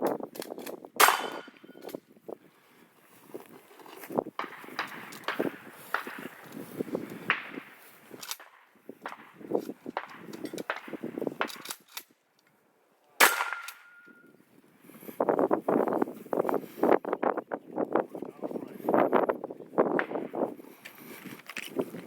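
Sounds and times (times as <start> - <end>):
shotgun shots: 1.0 - 1.6, 13.2 - 14.0
metallic clangs of targets: 1.0 - 2.0, 13.2 - 14.2.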